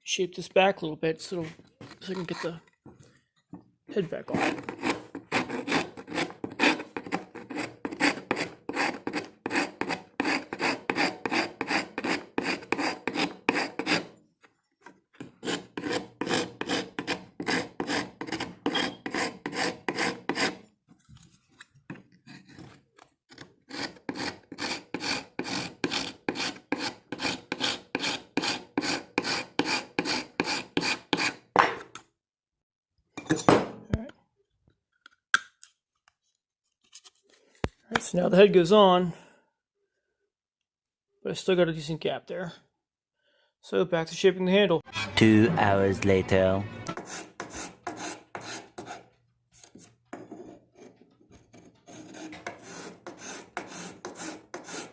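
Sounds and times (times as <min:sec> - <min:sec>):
file rasping on wood: 0:04.3 - 0:14.2, 0:15.2 - 0:20.6, 0:23.7 - 0:31.4, 0:46.9 - 0:49.1, 0:50.2 - 0:54.9.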